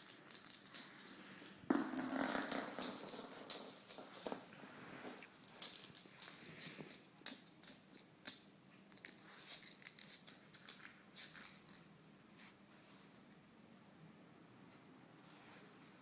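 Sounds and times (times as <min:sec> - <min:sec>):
jingling toy rattle: 0:00.0 - 0:07.0, 0:09.0 - 0:10.4, 0:11.1 - 0:11.9.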